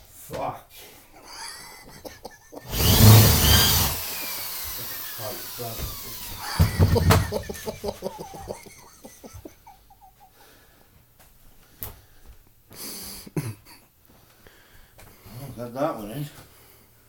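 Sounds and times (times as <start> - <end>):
stifled wheezing laughter: 1.1 - 2.7, 6.4 - 10.7, 12.8 - 13.9.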